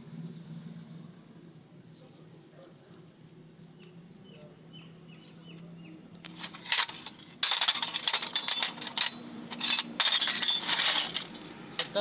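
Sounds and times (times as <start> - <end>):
small metal objects jingling: 6.4 - 11.4.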